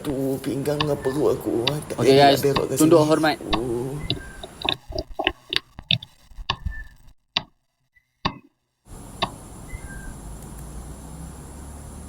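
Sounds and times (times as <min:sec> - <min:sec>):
faint room hiss: 0:00.0 - 0:05.5, 0:08.8 - 0:12.0
sharp knocks and clicks: 0:03.5 - 0:07.6, 0:08.2 - 0:08.5.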